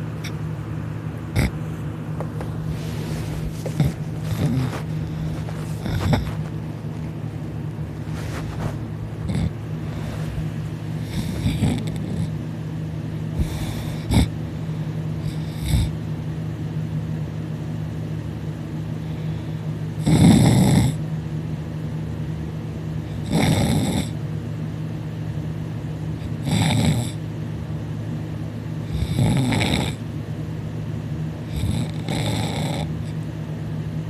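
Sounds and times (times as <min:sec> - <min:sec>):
steady low hum: 0:00.0 - 0:34.0
man snoring loudly: 0:01.3 - 0:01.6, 0:03.6 - 0:06.4, 0:09.2 - 0:10.0, 0:11.0 - 0:12.4, 0:13.4 - 0:14.4, 0:15.2 - 0:16.0, 0:20.0 - 0:21.0, 0:23.1 - 0:24.2, 0:26.2 - 0:27.2, 0:28.8 - 0:30.0, 0:31.5 - 0:33.2.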